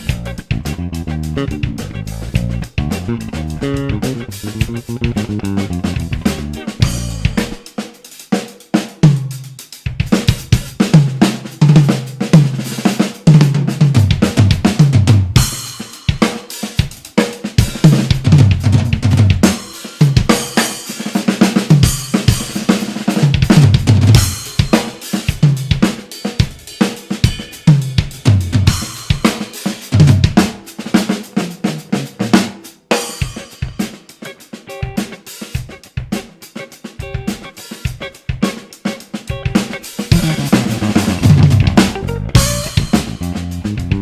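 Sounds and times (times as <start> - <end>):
funk drum kit playing: 0.0 - 44.0
cymbal crashes: 42.4 - 43.2.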